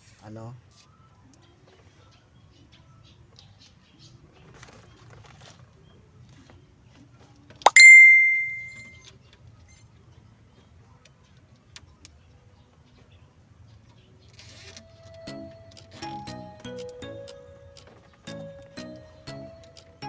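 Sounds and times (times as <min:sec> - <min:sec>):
faint clicks and rustling: 0:03.3 - 0:07.6
metallic bell-like ding: 0:07.7 - 0:08.9.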